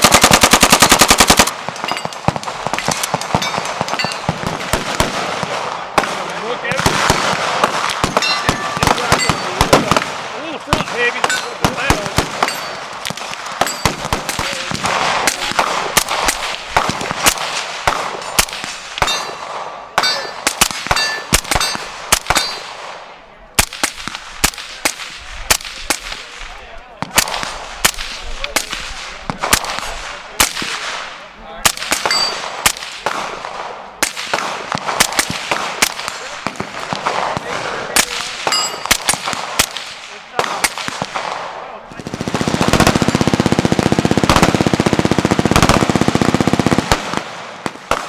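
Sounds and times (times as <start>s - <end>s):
gunshots: 0.0s - 48.0s
steel targets pinging: 1.8s - 4.5s, 8.1s - 9.6s, 10.8s - 11.8s, 12.4s - 12.9s, 13.6s - 14.4s, 18.0s - 22.8s, 31.7s - 33.2s, 38.0s - 39.7s.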